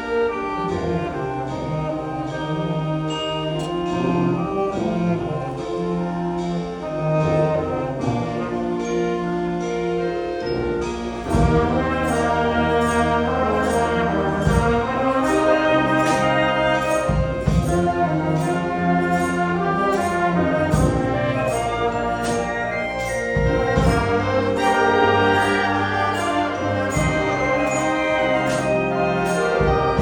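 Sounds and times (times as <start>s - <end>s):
wind band playing brass chords: 0.0s - 30.0s.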